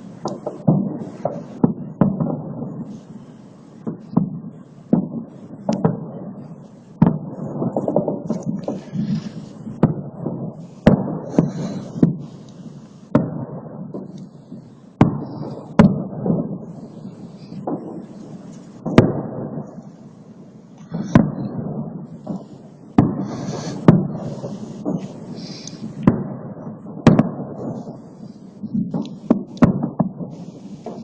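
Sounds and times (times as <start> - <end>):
fireworks bangs: 0.0 - 31.0
rumbling echo: 0.0 - 31.0.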